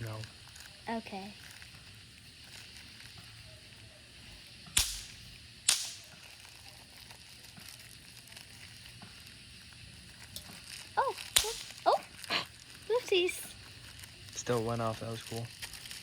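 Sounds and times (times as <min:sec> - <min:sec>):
faint steady hiss: 0:00.0 - 0:16.0
firework pops: 0:04.4 - 0:14.4.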